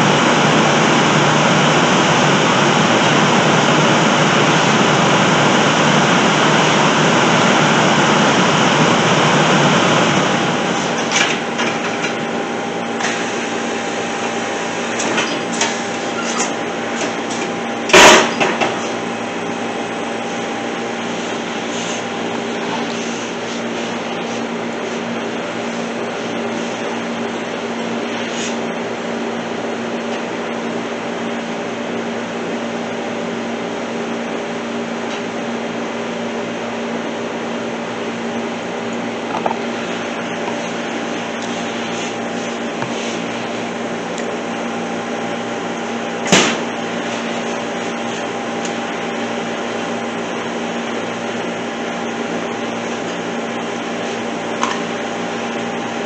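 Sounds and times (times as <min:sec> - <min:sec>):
steady mechanical hum: 0:00.0 - 0:56.0
sharp knock: 0:46.3 - 0:46.6.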